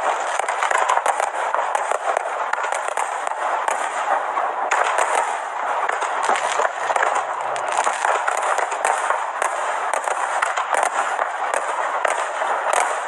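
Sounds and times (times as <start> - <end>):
fireworks crackling and popping: 0.0 - 13.0.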